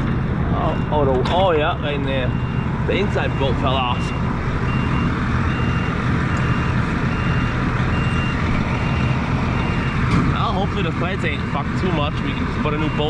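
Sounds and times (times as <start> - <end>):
tractor engine running: 0.0 - 13.0
high-pitched warning alarm beeps: 2.2 - 10.1, 12.1 - 13.0.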